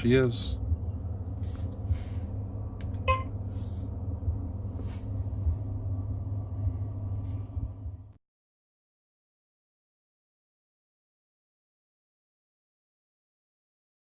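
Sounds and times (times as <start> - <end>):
vehicle cabin rumble: 0.0 - 8.2
faint rustles: 1.2 - 2.6, 4.6 - 6.2
short high beep: 3.1 - 3.3.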